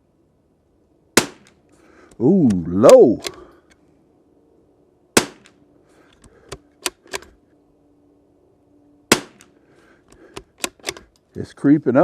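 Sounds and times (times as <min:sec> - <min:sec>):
rifle shots: 0:01.2 - 0:01.6, 0:05.2 - 0:05.6, 0:09.1 - 0:09.5
rifle bolt clicks: 0:02.5 - 0:03.8, 0:05.4 - 0:07.4, 0:10.3 - 0:11.3.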